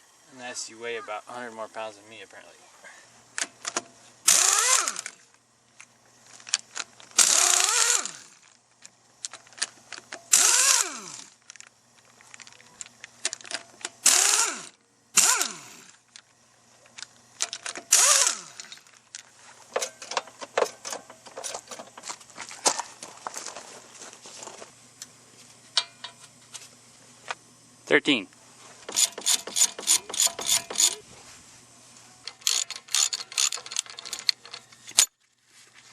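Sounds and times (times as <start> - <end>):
impact wrench bursts: 3.4 - 5.3, 6.5 - 8.6, 9.4 - 11.5, 13.2 - 16.1, 17.4 - 19.0, 28.8 - 31.0, 32.3 - 35.1
metallic clinks of tools: 28.9 - 31.0, 32.2 - 35.1.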